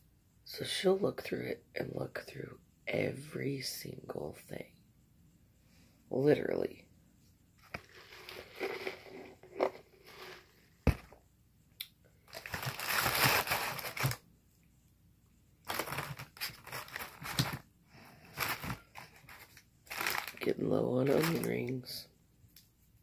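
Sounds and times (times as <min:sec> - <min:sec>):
paper wrapping crinkling: 0:07.6 - 0:11.0, 0:12.3 - 0:14.2, 0:15.7 - 0:17.6, 0:18.2 - 0:21.8
crunching fried food: 0:18.4 - 0:20.4.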